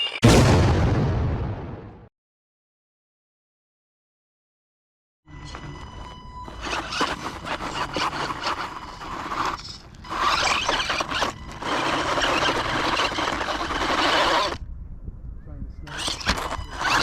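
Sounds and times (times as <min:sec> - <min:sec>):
rc car motor whining: 0:05.3 - 0:14.6, 0:15.9 - 0:17.0
tyres spinning on dirt: 0:05.6 - 0:14.6, 0:15.9 - 0:17.0.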